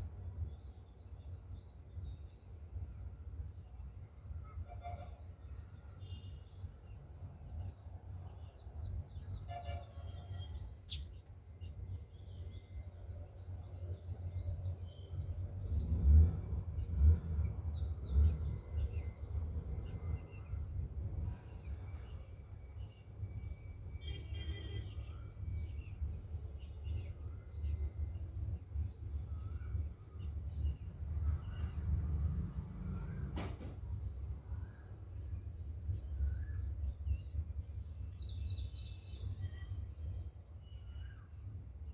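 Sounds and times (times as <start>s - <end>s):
small birds chirping: 7.6s - 15.9s, 34.1s - 41.9s
high insect drone: 8.3s - 41.9s.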